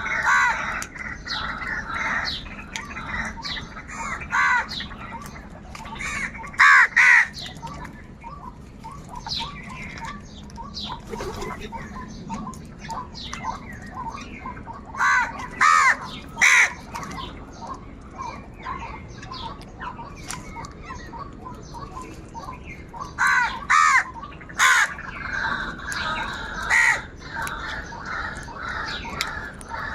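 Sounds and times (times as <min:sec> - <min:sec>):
crows cawing loudly: 0:00.0 - 0:05.2, 0:05.9 - 0:07.5, 0:14.9 - 0:17.3, 0:23.0 - 0:29.9
quieter crow calls chattering: 0:00.0 - 0:29.9.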